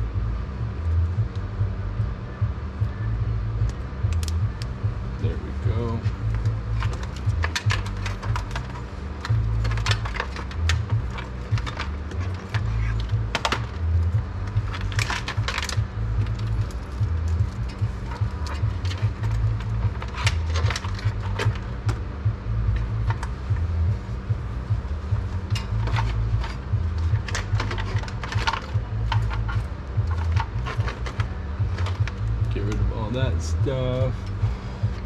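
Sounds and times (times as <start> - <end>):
low hum of machines: 0.0 - 35.0
cables and small parts rattling: 3.6 - 35.0.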